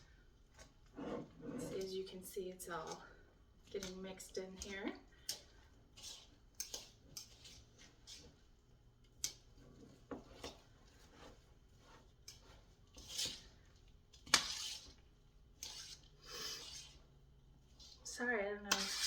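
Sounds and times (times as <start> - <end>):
spoon scraping a mixing bowl: 0.0 - 19.0
person sniffing: 16.2 - 16.7.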